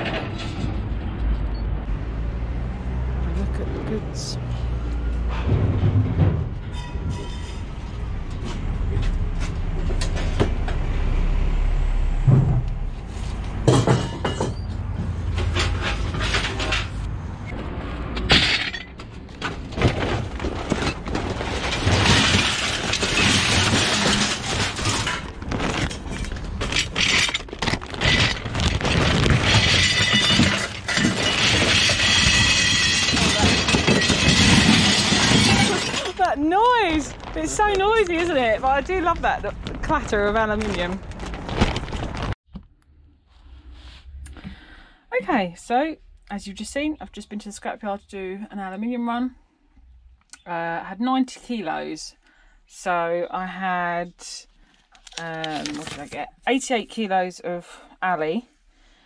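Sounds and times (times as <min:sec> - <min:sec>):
low rumble: 0:04.4 - 0:13.8, 0:36.7 - 0:45.1
metal scrap clattering: 0:05.3 - 0:07.8, 0:13.6 - 0:17.0, 0:18.2 - 0:38.6.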